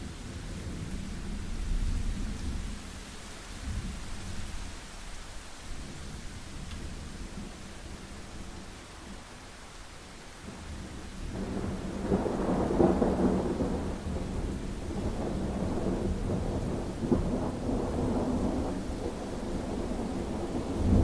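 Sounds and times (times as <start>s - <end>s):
steady rain: 0.0s - 21.0s
thunder rumbling and cracking: 10.4s - 21.0s.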